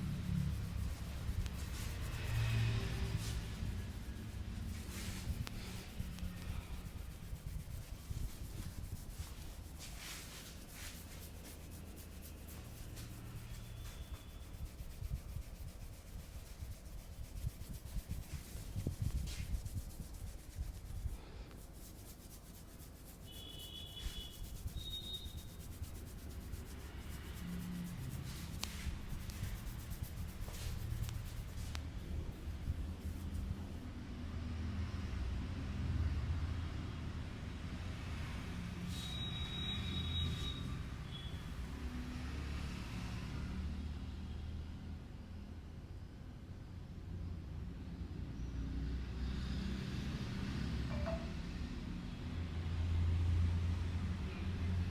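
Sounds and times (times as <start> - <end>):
hands rubbing scalp and hair: 0.0 - 33.8, 38.9 - 42.0.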